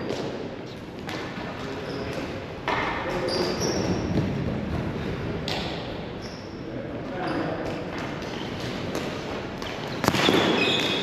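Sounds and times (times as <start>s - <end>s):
shoes squeaking on floor: 1.7s - 2.2s, 3.1s - 4.2s, 6.1s - 6.6s, 9.8s - 11.0s.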